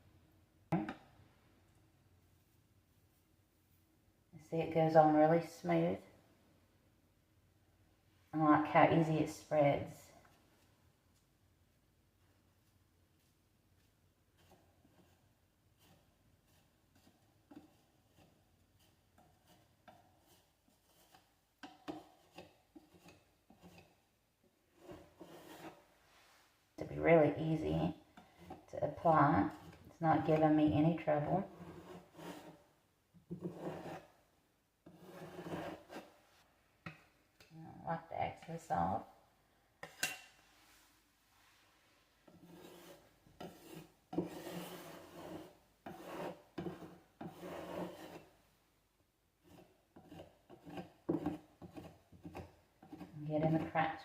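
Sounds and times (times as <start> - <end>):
spackle scraping on wood: 13.2 - 24.0, 24.7 - 26.1, 27.6 - 34.2, 34.8 - 36.2, 42.2 - 48.4, 49.4 - 54.0.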